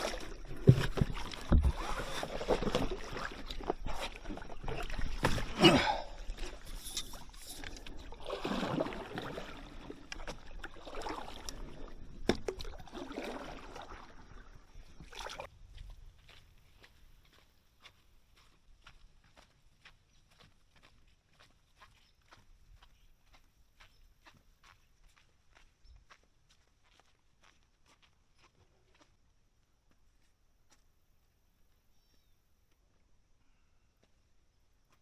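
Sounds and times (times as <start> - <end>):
water splashing around paddle board: 0.0 - 15.5.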